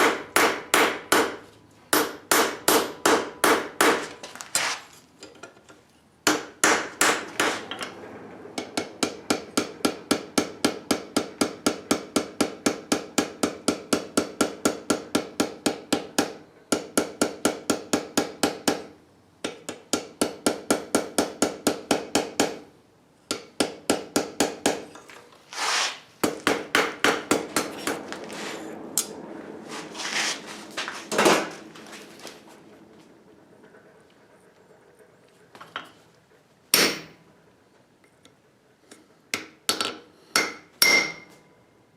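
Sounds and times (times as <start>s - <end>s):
hammer striking steel on anvil: 0.0s - 4.2s, 26.2s - 28.0s, 36.7s - 37.2s, 39.3s - 41.4s.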